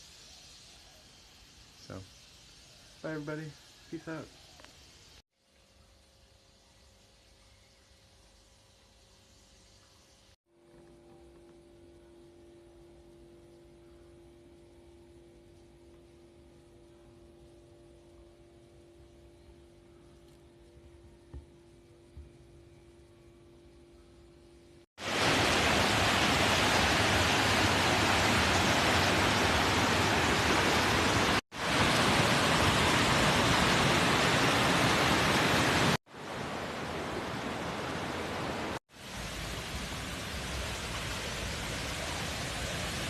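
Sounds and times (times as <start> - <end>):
waterfall rushing: 25.0 - 43.0.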